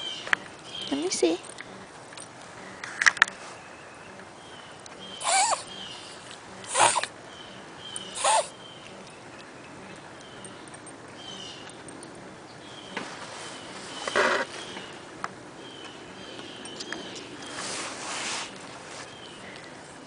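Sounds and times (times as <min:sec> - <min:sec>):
small pet wheezing snorts: 0:05.2 - 0:05.7, 0:06.7 - 0:07.1, 0:08.2 - 0:08.5.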